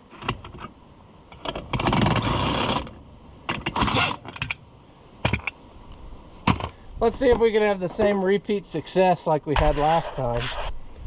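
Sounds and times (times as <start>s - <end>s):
ratcheting rasp: 9.6s - 10.7s.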